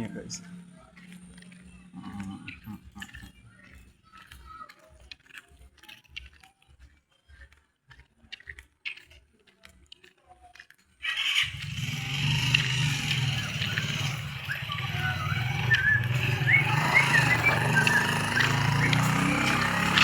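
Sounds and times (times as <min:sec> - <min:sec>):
vehicle engine passing close: 0:00.0 - 0:03.4, 0:11.1 - 0:20.0
footsteps on a road: 0:00.0 - 0:20.0.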